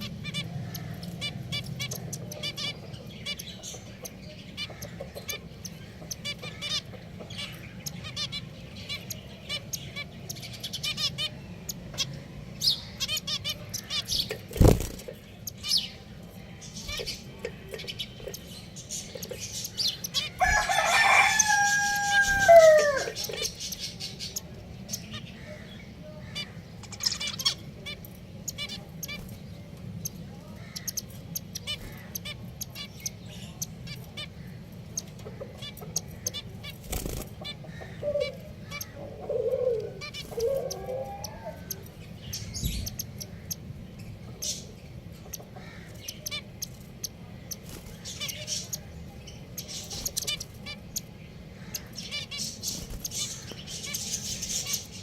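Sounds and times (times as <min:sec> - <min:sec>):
finches chirping: 0:00.0 - 0:55.0
rooster crowing: 0:20.4 - 0:23.2.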